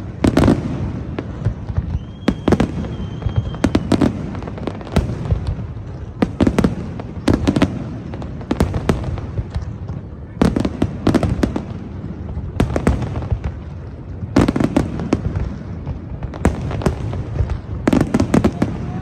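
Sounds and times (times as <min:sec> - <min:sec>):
fireworks bangs and cracks: 0:00.0 - 0:19.0
firework whistle: 0:01.7 - 0:04.1.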